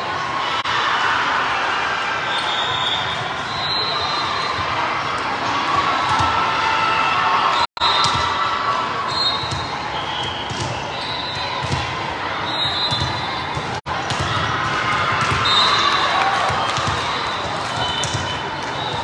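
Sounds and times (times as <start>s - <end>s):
voices echoing in a hall: 0.0s - 19.0s
sneaker squeaks: 9.0s - 19.0s.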